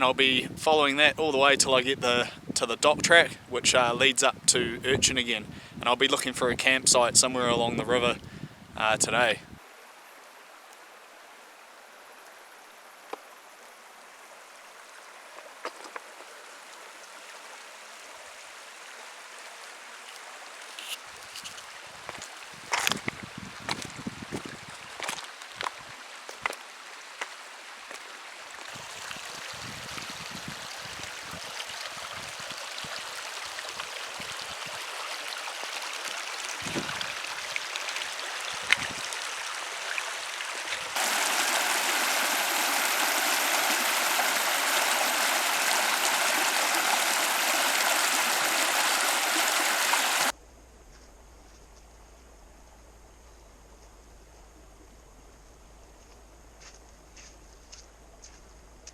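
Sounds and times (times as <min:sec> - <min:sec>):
river water rushing over stones: 0:24.7 - 0:50.3.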